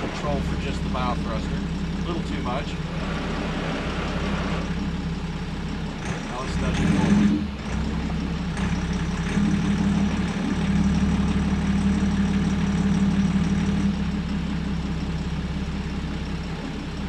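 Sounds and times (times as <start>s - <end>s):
boat engine humming: 0.0s - 17.0s.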